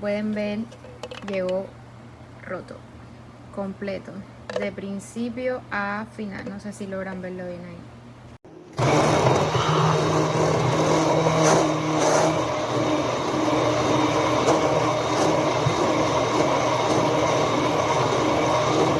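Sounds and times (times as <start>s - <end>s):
hand blender motor humming: 8.8s - 18.9s.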